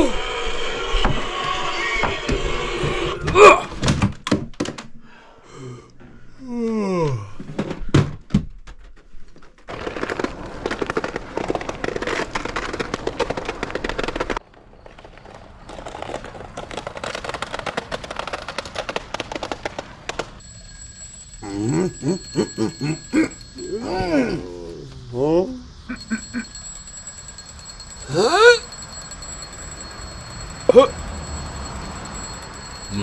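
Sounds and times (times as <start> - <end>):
alarm clock ringing: 2.8 - 3.4, 20.4 - 24.3, 25.8 - 33.0
steady high tone: 20.4 - 33.0.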